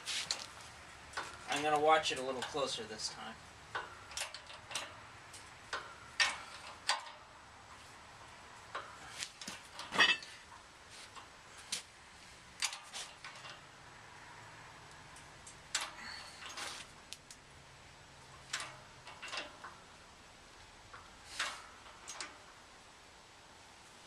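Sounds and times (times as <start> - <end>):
metallic clicks and ticks: 3.7 - 7.3, 14.9 - 17.5, 18.3 - 19.9.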